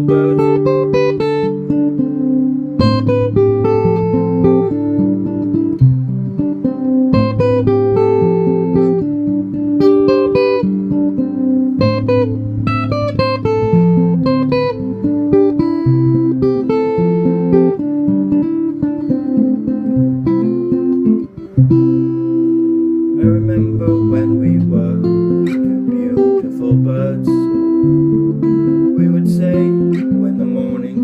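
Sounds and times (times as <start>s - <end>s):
acoustic guitar picking: 0.0s - 31.0s
bass line: 2.8s - 17.7s, 23.0s - 25.9s.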